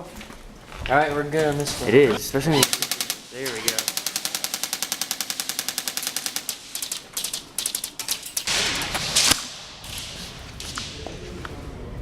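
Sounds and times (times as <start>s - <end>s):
airsoft gun firing: 2.6s - 10.8s.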